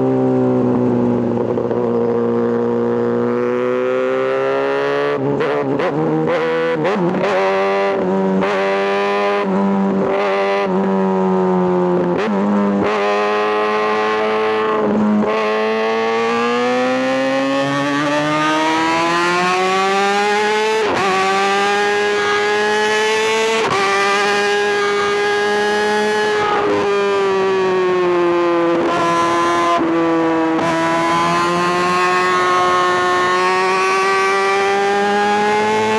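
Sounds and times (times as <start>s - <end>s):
motorcycle engine at high revs: 0.0s - 35.9s.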